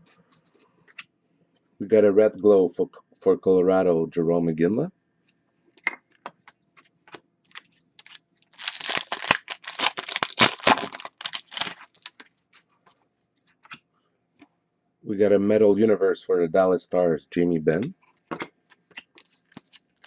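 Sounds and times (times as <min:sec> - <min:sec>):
wrapper crinkling: 0:07.5 - 0:12.3, 0:19.0 - 0:20.0.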